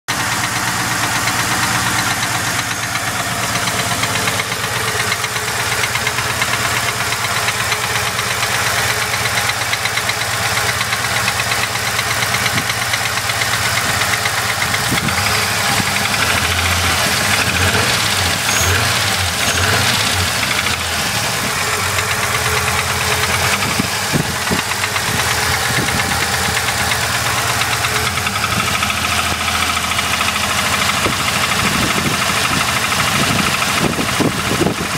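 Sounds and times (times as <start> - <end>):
car engine idling: 0.1 - 34.9
rapid engine knocking: 0.1 - 34.9.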